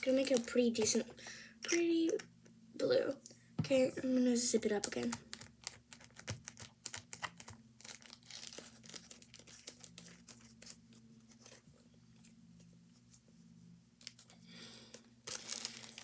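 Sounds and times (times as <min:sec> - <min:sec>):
plastic bag crinkling: 0:00.0 - 0:01.2, 0:04.7 - 0:11.6, 0:14.0 - 0:16.0.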